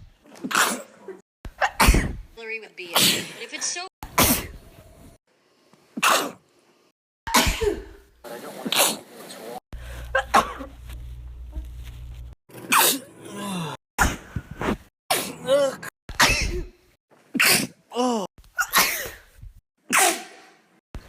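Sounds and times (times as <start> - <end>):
person sneezing: 1.6 - 2.2, 2.9 - 3.4, 4.2 - 4.6, 6.0 - 6.4, 7.3 - 8.0, 12.7 - 14.2, 15.1 - 19.3, 19.9 - 20.6.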